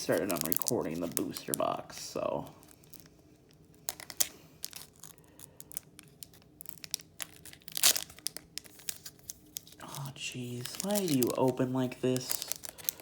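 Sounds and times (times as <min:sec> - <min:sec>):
foil wrapper crinkling: 0:00.0 - 0:13.0
foil wrapper tearing: 0:00.0 - 0:13.0.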